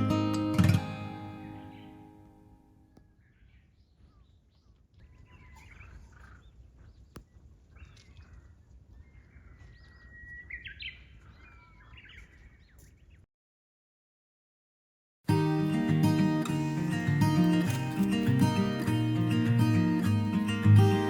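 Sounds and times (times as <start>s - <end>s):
birds calling and chirping: 3.0s - 13.2s, 16.1s - 21.0s.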